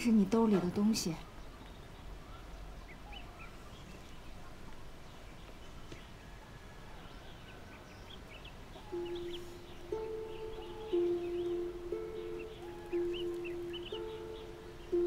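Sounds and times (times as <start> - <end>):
small birds chirping: 0.0 - 15.0
low steady hum: 8.7 - 15.0.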